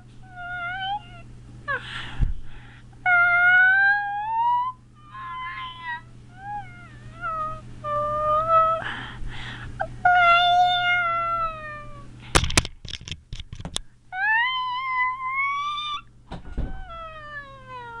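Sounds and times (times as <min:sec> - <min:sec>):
child imitating cat meows: 0:00.3 - 0:01.2, 0:03.1 - 0:08.8, 0:10.0 - 0:12.1, 0:14.2 - 0:18.0.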